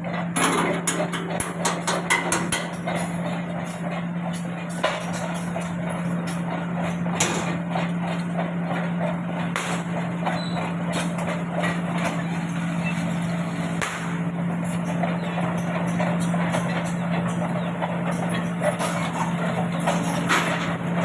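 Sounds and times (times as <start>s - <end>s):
heavy machinery humming: 0.0s - 21.0s
metallic clanks and knocks: 0.3s - 13.0s, 18.1s - 21.0s.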